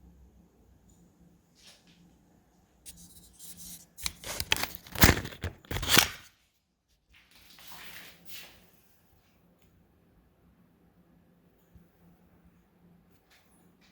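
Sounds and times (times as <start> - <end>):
knives scraping and clicking: 2.9 - 6.3.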